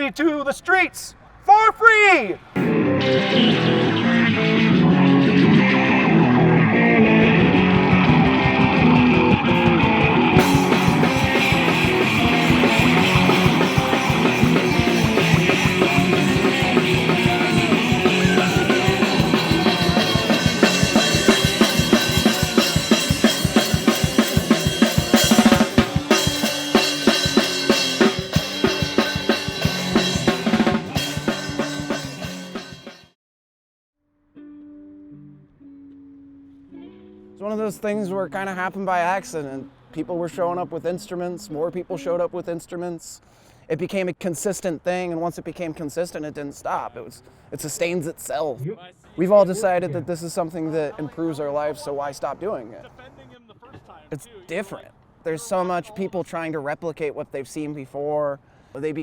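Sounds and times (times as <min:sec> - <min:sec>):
live band music: 0:02.6 - 0:33.0
guitar: 0:02.6 - 0:33.2, 0:34.0 - 0:42.4
drum kit fast beat: 0:07.0 - 0:33.2.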